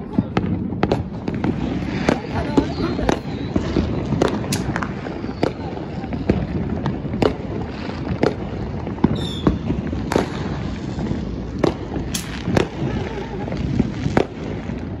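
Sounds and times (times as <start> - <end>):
distant explosions rumbling: 0.0 - 15.0
fireworks bangs and pops: 0.0 - 15.0
firework whistle: 1.6 - 6.4, 9.0 - 10.6, 12.1 - 14.4.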